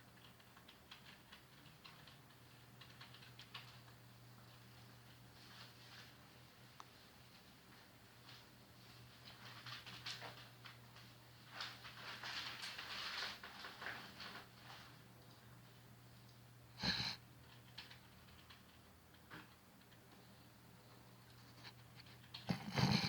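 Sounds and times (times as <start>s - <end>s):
boy snoring: 16.8s - 17.2s, 22.5s - 23.0s.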